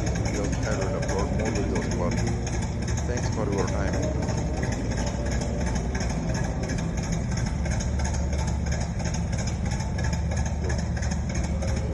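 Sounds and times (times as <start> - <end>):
radial engine running: 0.0 - 11.9.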